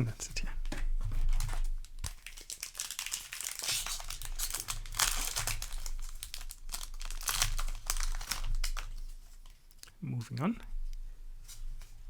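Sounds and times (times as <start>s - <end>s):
foil wrapper crinkling and tearing: 1.0s - 9.8s.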